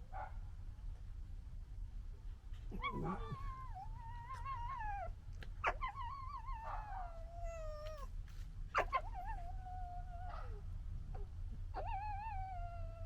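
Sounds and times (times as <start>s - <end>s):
young foxes whining: 2.7s - 8.1s.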